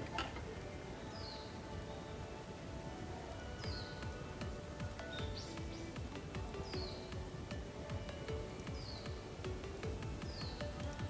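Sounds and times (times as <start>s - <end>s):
fire burning: 0.0s - 11.0s.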